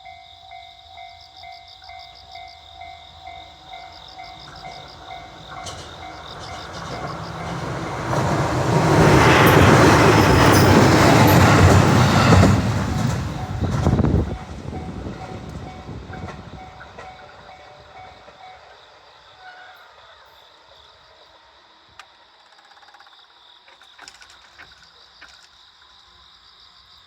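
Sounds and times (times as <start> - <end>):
crossing warning bell dinging: 0.0 - 18.8
electric train running: 3.6 - 18.9.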